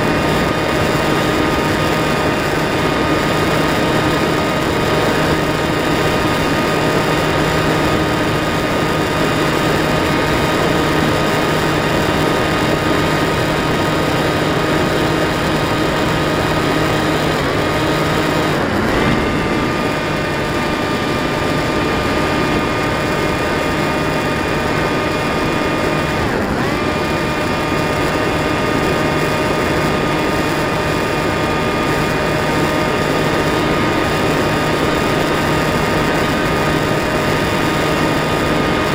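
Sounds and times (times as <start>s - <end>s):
rushing air: 0.0s - 29.6s
model plane motor whining: 0.0s - 38.9s.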